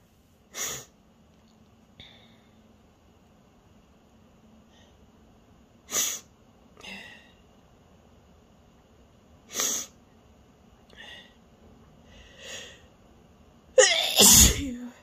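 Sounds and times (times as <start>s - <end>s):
faint breaths: 1.9s - 2.8s, 4.6s - 5.2s, 10.8s - 13.0s
person sneezing: 13.8s - 14.9s.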